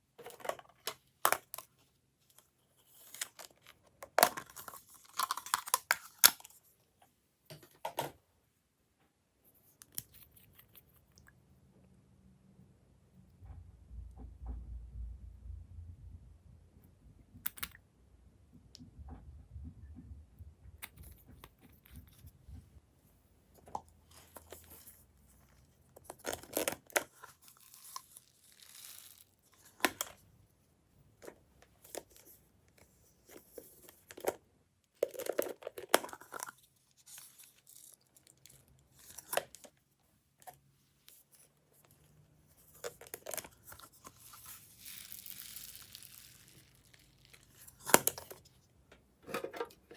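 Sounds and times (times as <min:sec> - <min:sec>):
slime crackling and tearing: 0:44.1 - 0:48.2.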